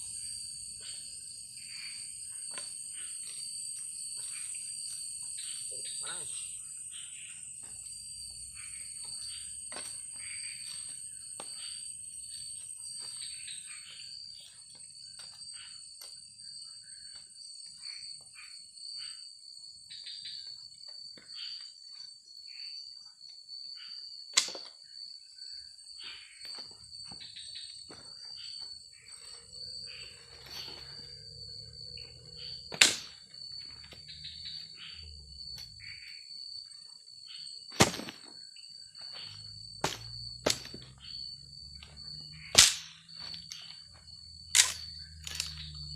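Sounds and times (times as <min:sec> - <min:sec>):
insects chirring: 0:00.0 - 0:45.9
sharp cracks or knocks: 0:24.4 - 0:24.7, 0:32.7 - 0:33.3, 0:37.7 - 0:38.4, 0:39.8 - 0:40.9, 0:42.4 - 0:43.7, 0:44.5 - 0:45.6.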